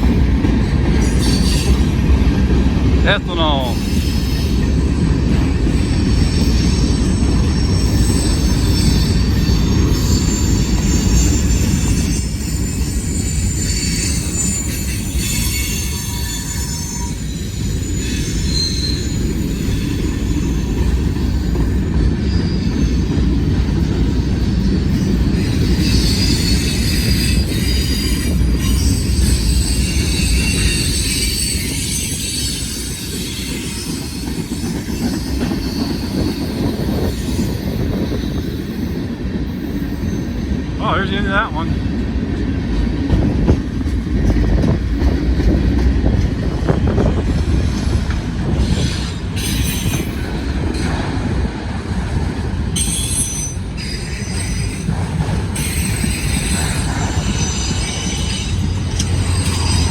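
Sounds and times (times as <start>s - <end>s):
train cars rumbling: 0.0s - 59.9s
steel wheel squeal: 1.0s - 2.0s, 3.5s - 40.6s, 48.5s - 51.0s, 52.7s - 59.9s.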